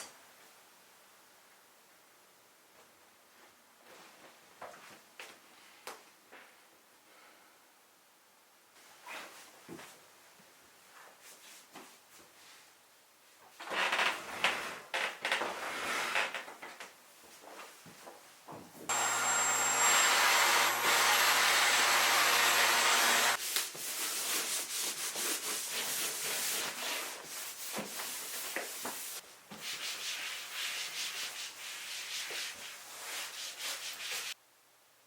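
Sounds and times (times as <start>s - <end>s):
small electric motor whining: 18.9s - 23.4s.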